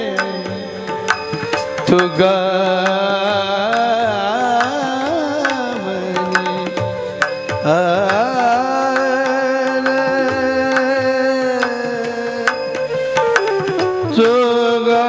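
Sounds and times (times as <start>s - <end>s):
held accompaniment tones: 0.0s - 15.0s
man singing devotional song: 0.0s - 15.0s
hand drum strokes: 10.2s - 14.7s.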